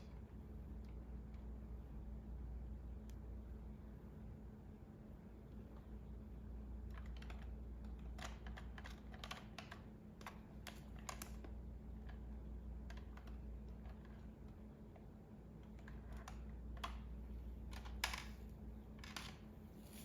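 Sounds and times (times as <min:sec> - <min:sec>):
faint low hum: 0:00.0 - 0:20.0
pens clicking and tapping: 0:06.9 - 0:11.5.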